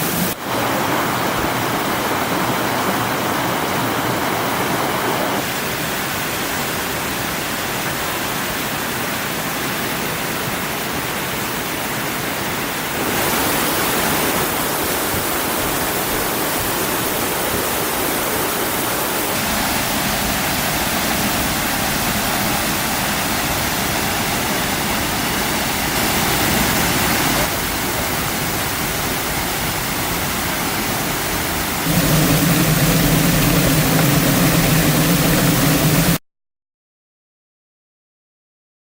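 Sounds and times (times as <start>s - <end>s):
waterfall rushing: 0.0s - 36.2s
low steady hum: 31.9s - 36.2s.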